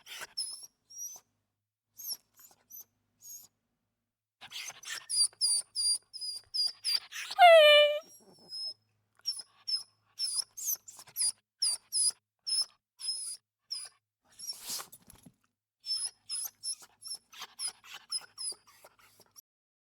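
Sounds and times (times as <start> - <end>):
high-pitched squeaks: 7.4 - 8.0.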